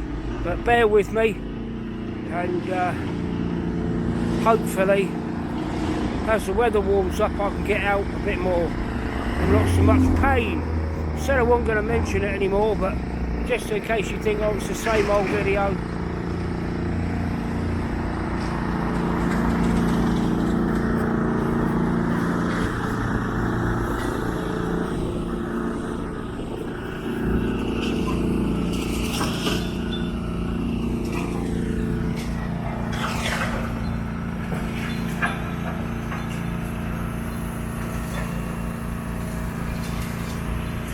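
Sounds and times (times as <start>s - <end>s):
heavy engine droning: 0.0s - 40.9s.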